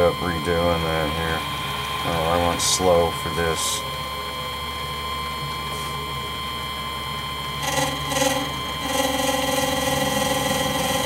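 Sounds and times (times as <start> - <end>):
lathe motor hum: 0.0 - 11.0
lathe whine: 0.0 - 11.0
tool scraping metal: 7.6 - 11.0.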